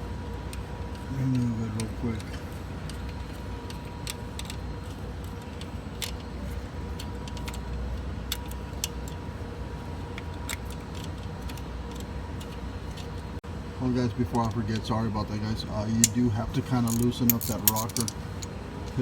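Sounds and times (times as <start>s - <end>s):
ratchet clicking: 16.8s - 19.0s.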